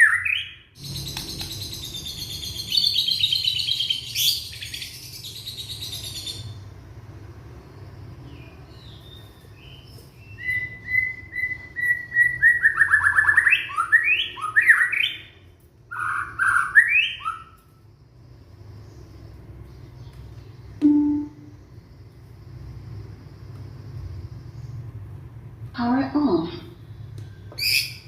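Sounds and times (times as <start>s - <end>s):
songbird whistling song: 0.0s - 6.6s, 8.3s - 17.8s, 20.0s - 21.7s, 27.2s - 28.0s.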